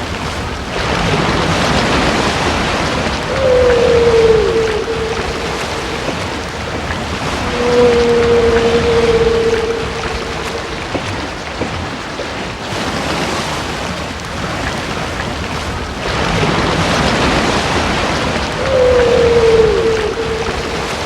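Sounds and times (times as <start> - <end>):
whale moan: 1.8 - 12.0, 17.0 - 21.0.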